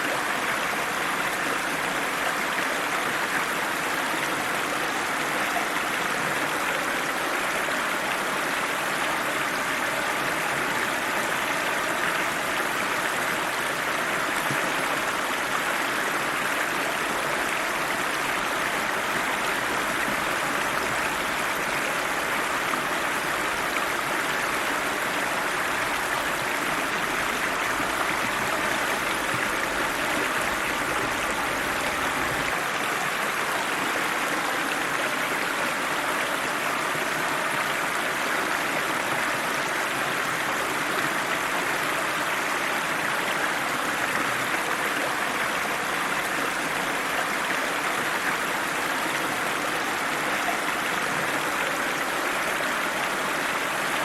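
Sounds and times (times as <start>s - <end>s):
water rushing over rocks: 0.0s - 54.0s.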